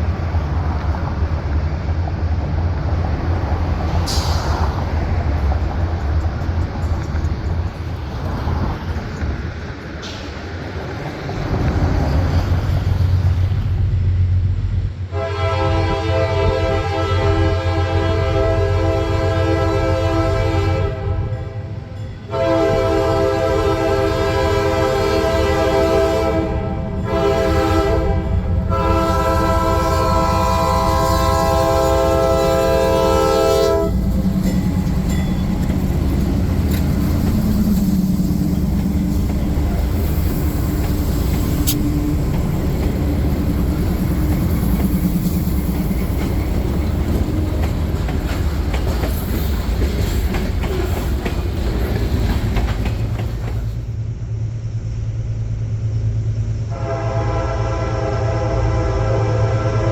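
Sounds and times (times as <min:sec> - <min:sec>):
train rumbling past: 0:00.0 - 0:59.9
locomotive air horn blasts: 0:15.1 - 0:34.1, 0:56.7 - 0:59.9
wheels clicking over rail joints: 0:33.7 - 0:54.0.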